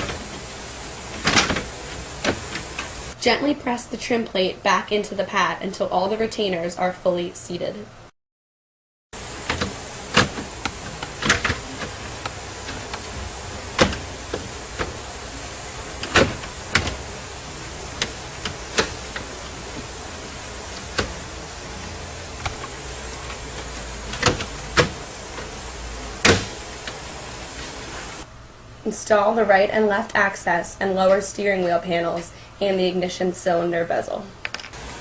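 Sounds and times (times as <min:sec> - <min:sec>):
steady hiss: 0:00.0 - 0:03.2, 0:09.2 - 0:28.3, 0:34.8 - 0:35.0.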